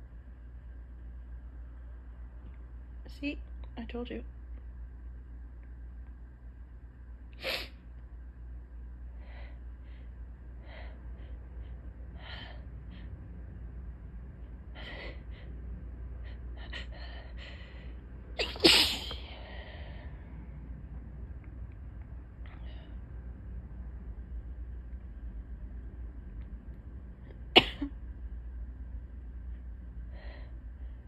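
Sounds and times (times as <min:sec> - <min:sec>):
woman sneezing: 0:18.4 - 0:19.3.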